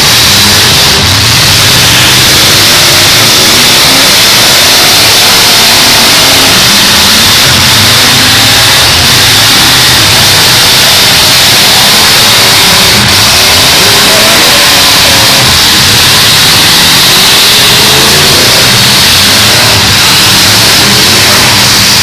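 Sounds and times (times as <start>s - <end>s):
car engines revving: 0.0s - 22.0s.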